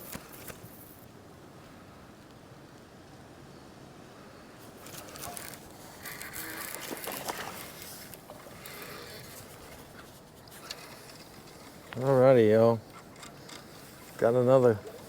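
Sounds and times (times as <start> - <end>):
scraping and rustling: 4.6 - 15.0.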